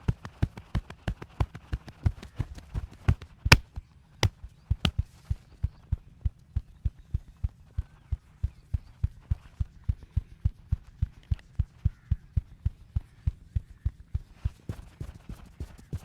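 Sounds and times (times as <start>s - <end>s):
massage gun thudding on body: 3.1s - 3.7s.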